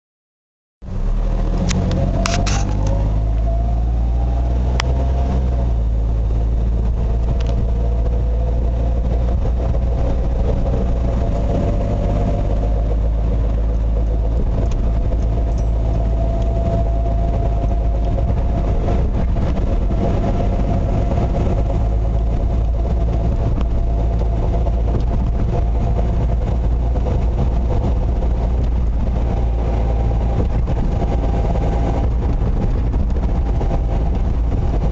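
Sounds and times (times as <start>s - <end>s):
car engine and road rumble: 0.8s - 34.9s
whining tone: 1.2s - 34.9s
sharp clicks: 1.6s - 3.5s.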